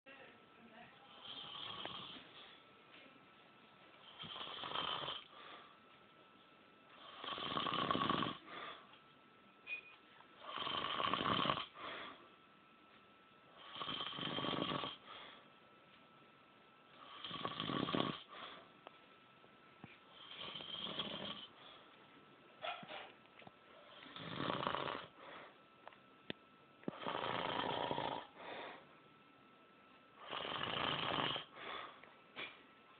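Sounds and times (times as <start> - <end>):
old man snoring loudly: 1.1 - 2.2, 4.1 - 5.3, 7.0 - 8.5, 10.4 - 11.8, 13.6 - 15.0, 17.0 - 18.3, 20.2 - 21.6, 24.0 - 25.2, 26.9 - 28.4, 30.2 - 31.6
soft breath: 8.4 - 9.0, 11.7 - 12.4, 25.1 - 25.7, 28.3 - 29.0, 31.5 - 32.6.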